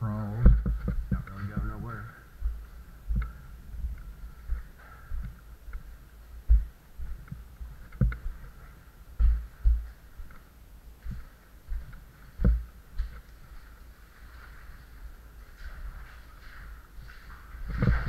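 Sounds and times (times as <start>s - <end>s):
faint steady hiss: 0.0s - 18.0s
dull thumps and knocks: 0.4s - 1.7s.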